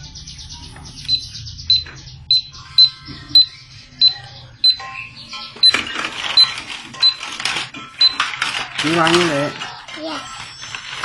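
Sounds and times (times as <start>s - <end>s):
toy cash register beeping: 1.0s - 11.0s.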